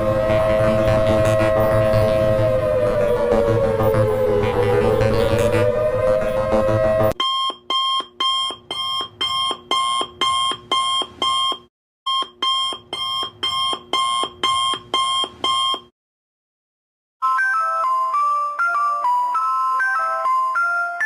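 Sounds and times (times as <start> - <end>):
rising siren-like tone: 0.0 - 7.2
short electronic alarm beeps: 7.2 - 15.9.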